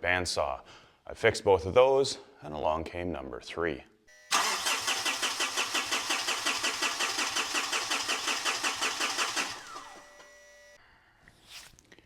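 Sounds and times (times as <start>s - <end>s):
diesel engine cranking: 4.3s - 10.1s
starter motor whine: 4.3s - 10.8s.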